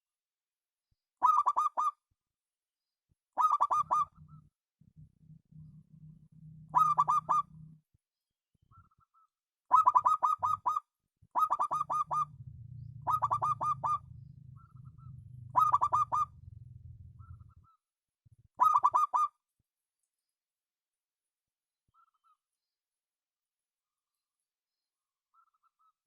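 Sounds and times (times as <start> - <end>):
dove cooing: 3.4 - 4.4, 6.6 - 7.8, 9.7 - 10.8, 11.4 - 17.8, 18.6 - 19.3
low hum: 4.8 - 7.8, 12.0 - 17.5.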